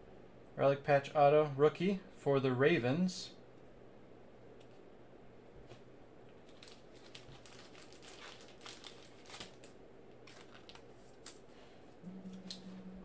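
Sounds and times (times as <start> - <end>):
cards and plastic packaging rustling: 6.4 - 11.6.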